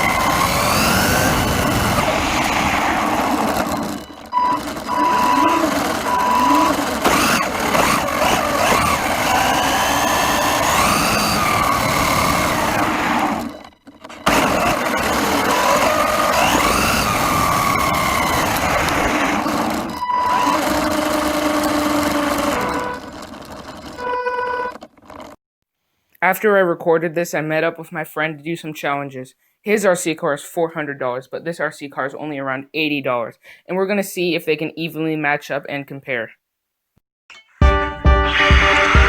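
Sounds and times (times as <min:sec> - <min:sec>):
toy car electric motor whining: 0:00.0 - 0:25.4.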